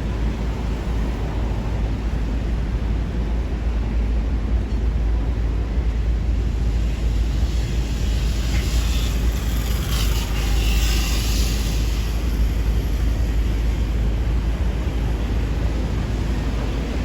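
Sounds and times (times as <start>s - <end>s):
street traffic rumble: 0.0s - 17.0s
passing vehicle hiss: 6.1s - 17.0s.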